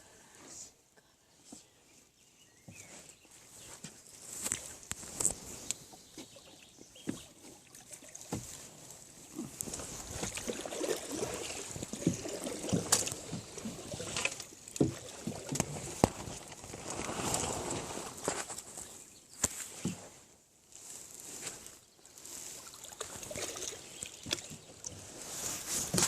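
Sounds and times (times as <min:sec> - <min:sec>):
water sloshing and splashing: 0:04.3 - 0:19.0, 0:22.2 - 0:26.0.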